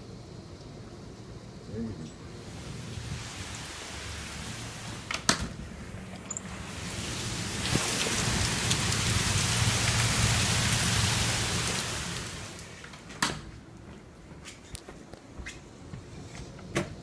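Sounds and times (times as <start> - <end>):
heavy rain in strong wind: 0.1 - 13.2.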